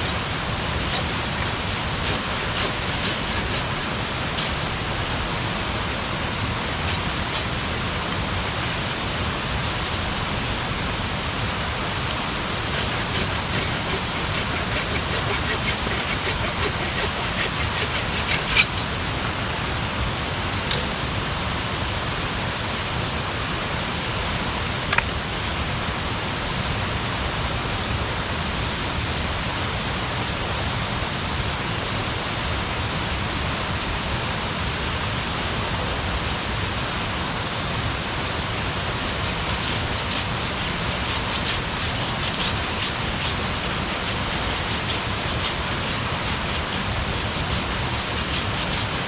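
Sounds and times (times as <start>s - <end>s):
campfire hissing: 0.0s - 10.2s, 38.0s - 49.0s.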